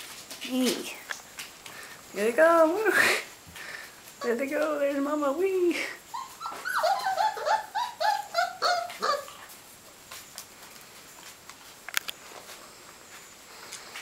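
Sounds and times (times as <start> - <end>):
puppies yipping: 6.0 - 9.6.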